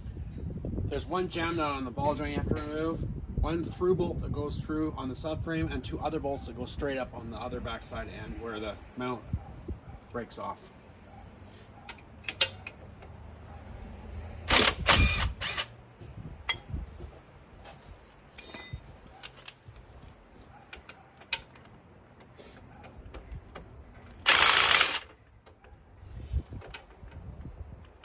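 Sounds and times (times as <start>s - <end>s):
tools clicking and clanking: 11.8s - 13.6s, 14.5s - 15.8s, 18.3s - 19.8s, 20.5s - 25.8s
power tool bursts: 14.5s - 15.8s, 24.2s - 25.2s.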